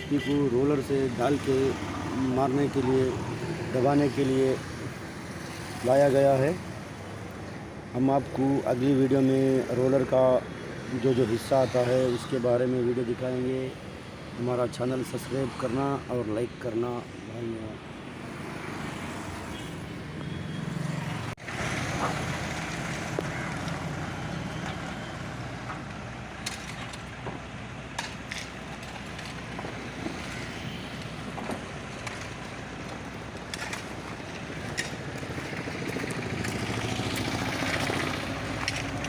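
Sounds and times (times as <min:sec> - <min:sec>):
stones crackling and clicking: 0:25.6 - 0:39.0.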